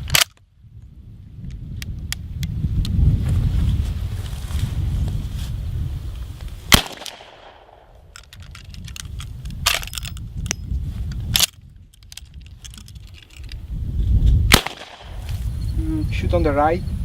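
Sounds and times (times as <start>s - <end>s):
quiet sharp cracks and clicks: 0.0s - 0.4s, 6.7s - 13.6s, 14.5s - 15.4s
loud gunshot: 6.7s - 7.9s, 14.5s - 15.3s.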